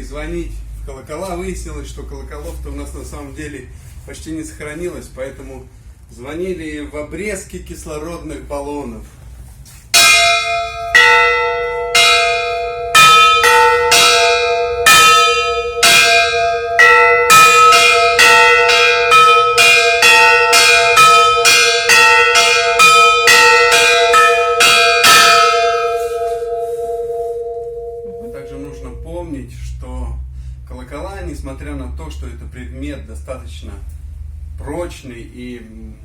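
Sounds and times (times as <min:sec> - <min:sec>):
struck metal bells pealing: 0:09.9 - 0:29.5
sustained low metallic tone: 0:10.3 - 0:29.8.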